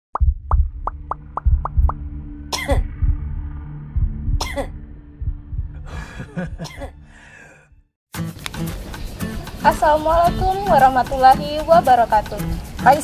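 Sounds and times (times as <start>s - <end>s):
background music with low beat: 0.1s - 7.0s, 8.2s - 13.0s
person coughing: 2.5s - 2.9s, 4.4s - 4.8s, 5.9s - 7.0s.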